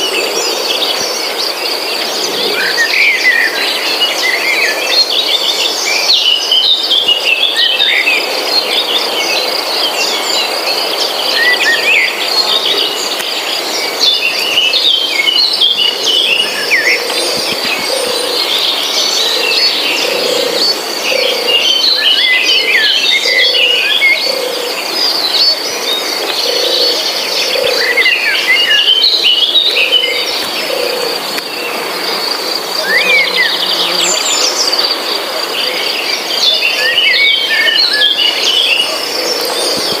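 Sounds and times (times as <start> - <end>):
small birds chirping: 0.0 - 40.0
low bird call: 14.1 - 24.7
pulsing insect trill: 26.4 - 37.6.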